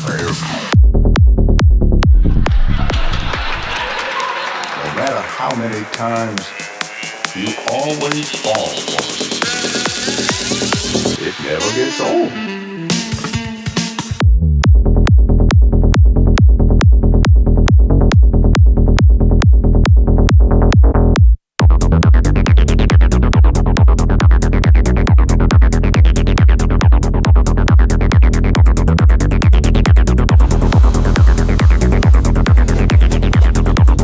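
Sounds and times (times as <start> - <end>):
heavy bassline: 0.0 - 3.6, 5.4 - 34.0
trance music: 0.0 - 14.3, 21.6 - 34.0
steady kick drum: 0.8 - 2.6, 13.0 - 34.0.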